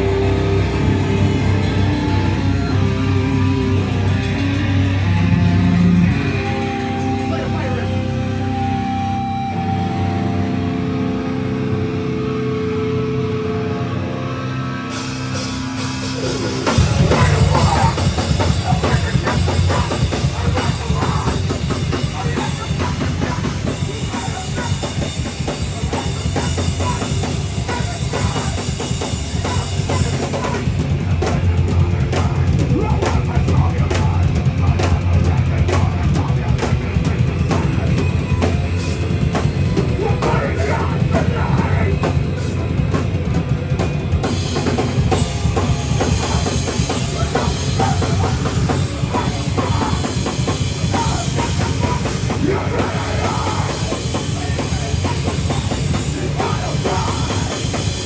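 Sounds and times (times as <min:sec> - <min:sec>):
fast drum-kit playing: 0:00.0 - 0:10.3, 0:14.8 - 0:58.0
held guitar notes ringing: 0:00.0 - 0:20.4
heavy rock band playing: 0:00.0 - 0:58.0.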